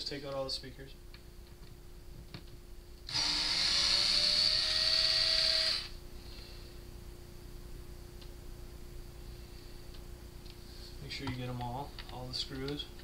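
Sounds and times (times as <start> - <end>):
electric drill motor whine: 3.1 - 6.0.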